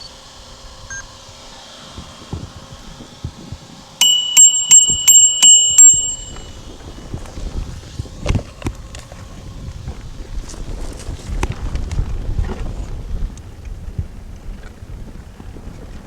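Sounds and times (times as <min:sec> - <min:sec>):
bicycle bell ringing: 0:04.0 - 0:06.6.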